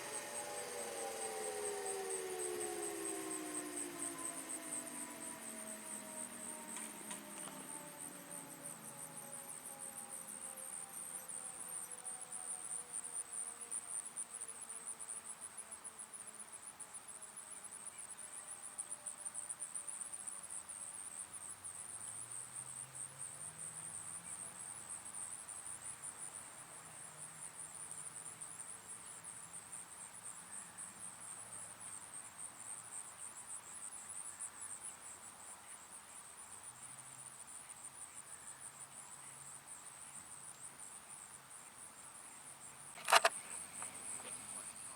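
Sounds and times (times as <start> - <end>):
insect trill chorus: 0.0 - 12.3, 43.0 - 44.9
sharp click: 43.0 - 44.9.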